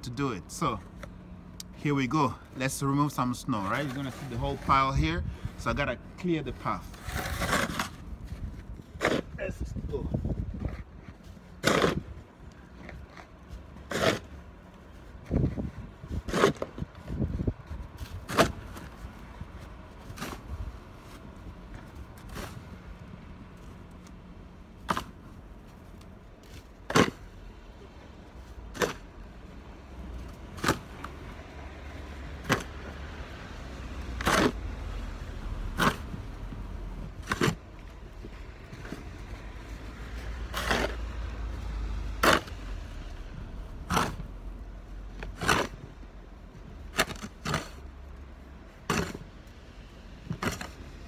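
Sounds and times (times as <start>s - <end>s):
snow shovel scraping walkway: 2.0s - 9.6s, 10.6s - 22.8s, 35.5s - 42.6s, 45.1s - 46.0s, 48.8s - 49.3s.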